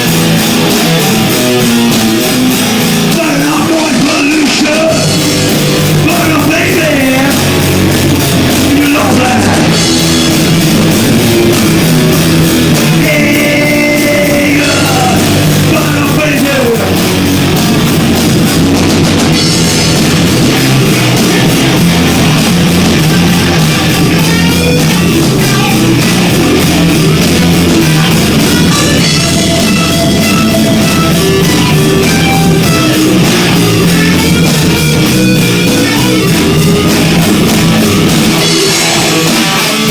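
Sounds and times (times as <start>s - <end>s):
distorted live rock band: 0.0s - 39.9s.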